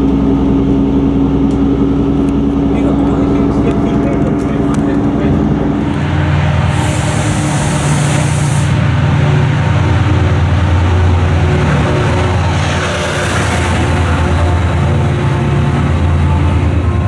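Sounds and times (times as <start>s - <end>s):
train engine humming: 0.0s - 17.0s
hiss: 6.6s - 8.8s.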